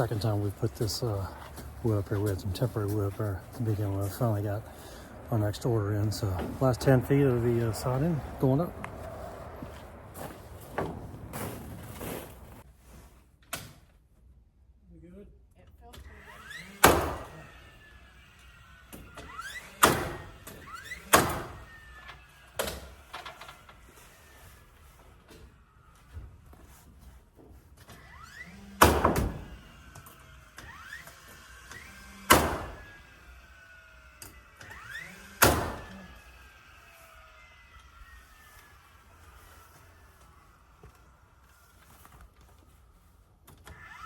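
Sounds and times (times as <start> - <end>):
nail gun shots into wood: 16.8 - 17.3, 19.8 - 20.3, 21.1 - 21.6, 28.8 - 29.5, 32.3 - 32.8, 35.4 - 35.9.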